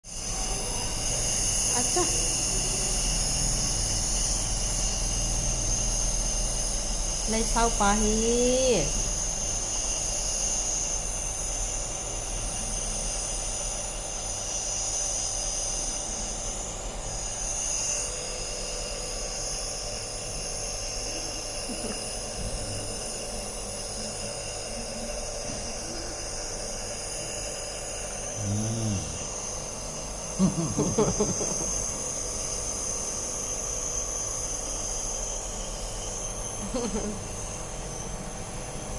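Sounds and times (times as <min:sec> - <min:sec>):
nebulizer hissing and humming: 0:00.1 - 0:38.9
short low voice sound: 0:28.4 - 0:29.3.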